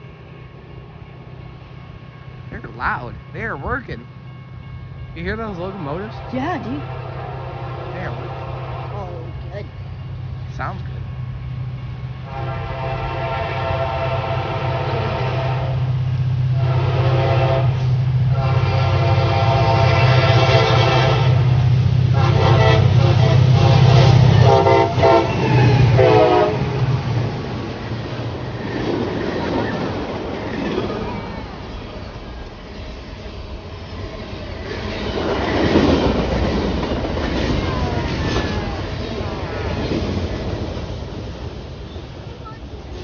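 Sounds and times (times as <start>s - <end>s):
diesel locomotive engine drone: 0.0s - 43.0s
freight cars rumble and rail clatter: 0.0s - 43.0s
train air horn blasts: 4.3s - 9.3s, 12.2s - 15.9s, 16.6s - 26.9s.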